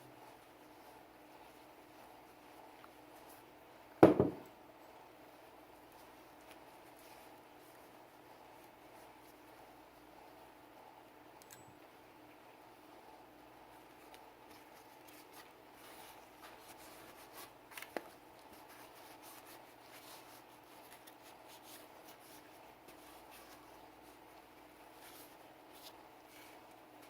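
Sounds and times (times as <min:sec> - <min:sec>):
rubbing and scratching strokes: 0:14.5 - 0:17.7, 0:18.4 - 0:27.0.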